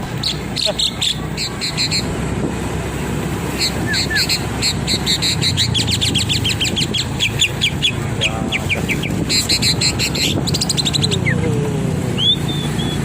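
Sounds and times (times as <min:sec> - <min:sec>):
bird singing fast chirps: 0:03.5 - 0:11.4, 0:12.1 - 0:13.0.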